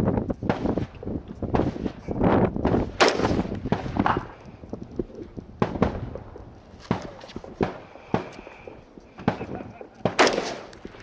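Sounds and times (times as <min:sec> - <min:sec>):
rifle shots: 0:02.6 - 0:04.4, 0:09.2 - 0:11.0.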